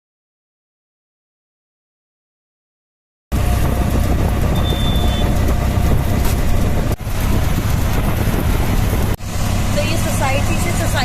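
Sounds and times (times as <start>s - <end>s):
auto-rickshaw engine rumble: 3.3s - 11.0s
road and wind noise: 3.3s - 11.0s.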